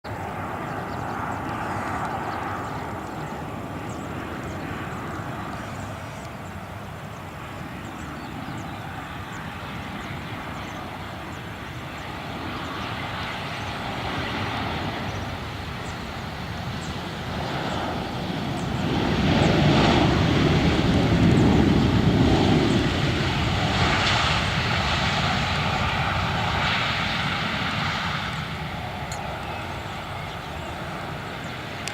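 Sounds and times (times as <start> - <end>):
jet engines roaring: 0.1 - 31.9.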